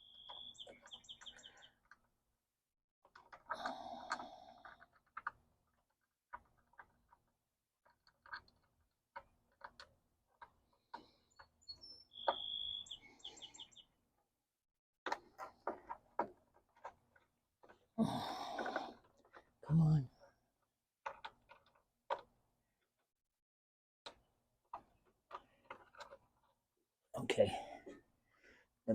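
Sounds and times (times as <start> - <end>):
bird chirping: 0.0 - 2.0, 10.7 - 14.0
small metal parts clicking: 3.0 - 11.5.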